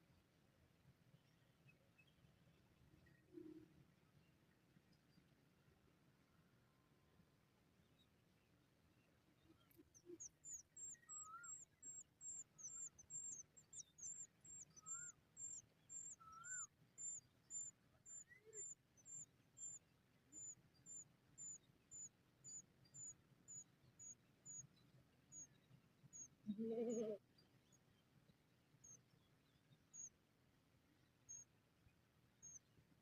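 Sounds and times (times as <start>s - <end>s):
bird chicks chirping: 10.2s - 19.8s.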